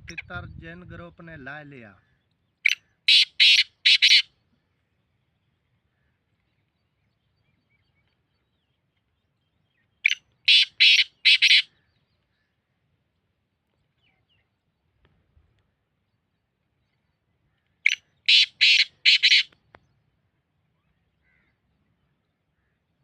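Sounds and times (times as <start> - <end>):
francolin calling: 2.6 - 4.3, 10.0 - 11.7, 17.9 - 19.5.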